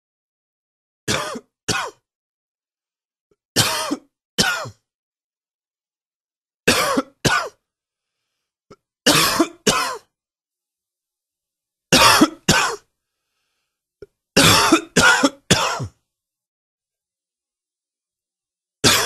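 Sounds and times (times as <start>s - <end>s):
man coughing: 3.6s - 4.8s, 6.7s - 7.6s, 9.1s - 10.1s, 12.0s - 12.9s, 14.4s - 16.0s.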